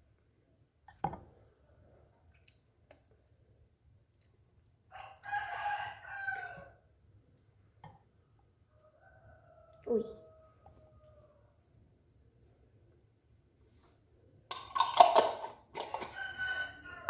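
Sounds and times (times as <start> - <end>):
rooster crowing: 4.9 - 6.8, 15.8 - 17.0.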